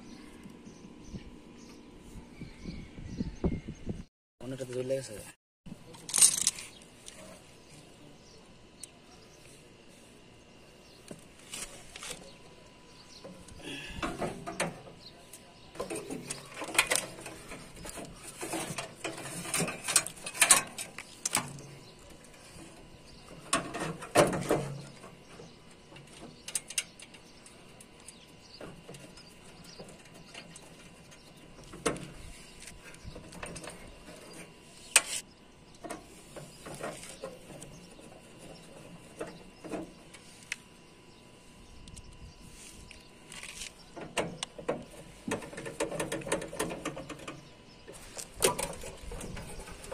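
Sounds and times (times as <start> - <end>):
tools and metal parts rattling: 5.9 - 6.8, 15.8 - 22.6.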